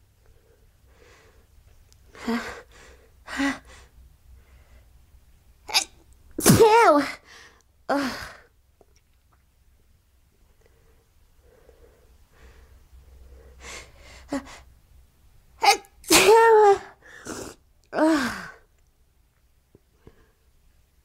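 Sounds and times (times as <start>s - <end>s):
woman sneezing: 5.7s - 7.2s, 15.6s - 17.6s.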